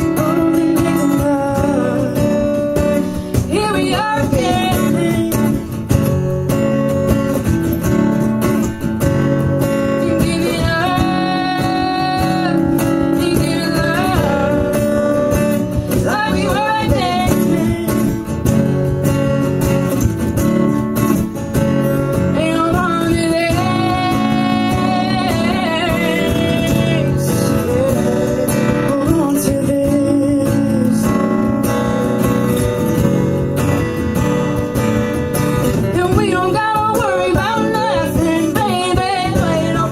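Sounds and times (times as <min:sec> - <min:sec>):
acoustic guitar strumming: 0:00.0 - 0:39.9
voices singing held notes: 0:22.4 - 0:28.4.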